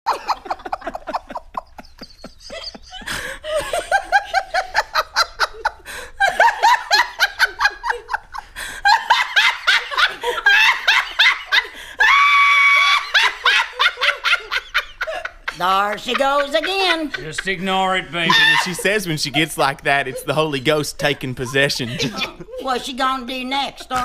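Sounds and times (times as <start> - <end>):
woman laughing uncontrollably: 0.1 - 17.4, 18.2 - 22.8
woman squealing: 18.2 - 18.8.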